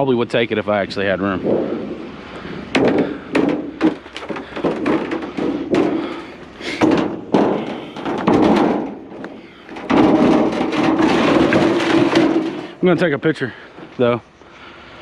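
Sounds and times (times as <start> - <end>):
rustling and scraping: 1.0 - 14.1
knocks and thumps: 1.4 - 12.8.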